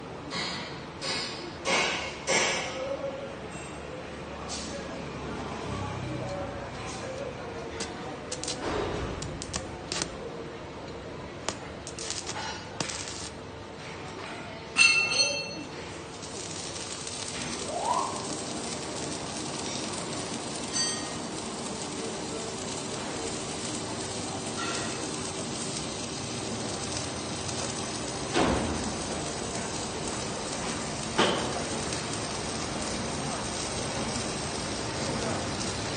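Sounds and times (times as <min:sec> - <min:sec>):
steady hum and hiss: 0:06.5 - 0:35.9
metal clinking: 0:14.8 - 0:17.6.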